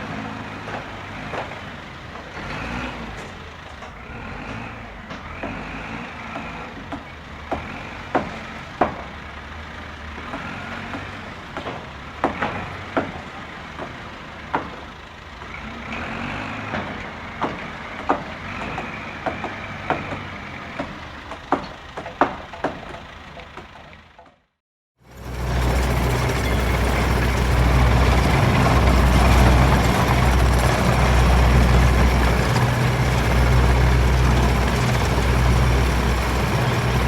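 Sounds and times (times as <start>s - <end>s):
heavy machinery rumbling: 25.0s - 37.0s.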